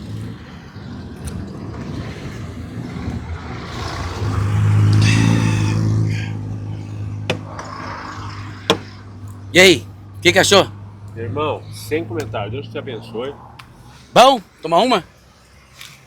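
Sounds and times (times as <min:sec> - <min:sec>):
vehicle engine passing: 0:00.0 - 0:14.2.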